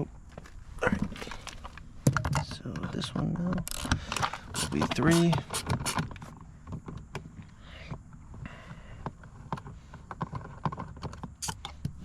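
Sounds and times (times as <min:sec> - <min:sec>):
hand tool clicking on screws: 0:03.6 - 0:06.2.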